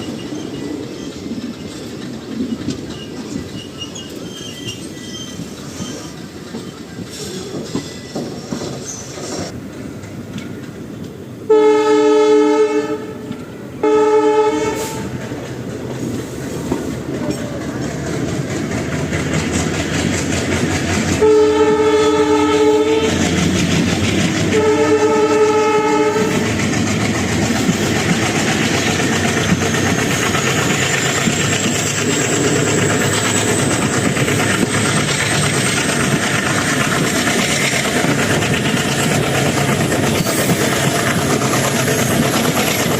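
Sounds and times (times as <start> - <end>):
locomotive horn blasts: 11.5 - 15.2, 21.2 - 23.2, 24.5 - 26.4.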